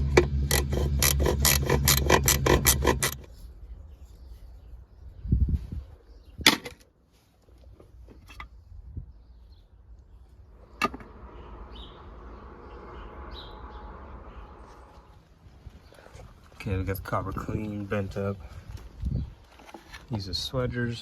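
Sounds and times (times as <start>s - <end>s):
steady rubbing: 0.0s - 4.2s, 10.4s - 15.8s.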